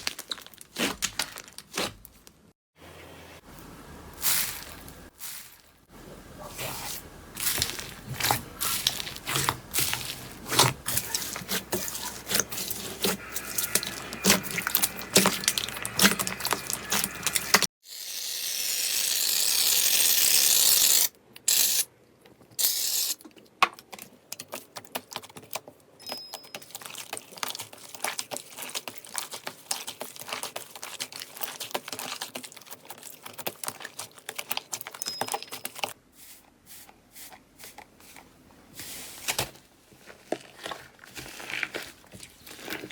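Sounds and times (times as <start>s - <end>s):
slime squishing and crackling: 0.0s - 2.5s, 7.4s - 17.7s, 26.5s - 35.9s, 39.3s - 42.9s.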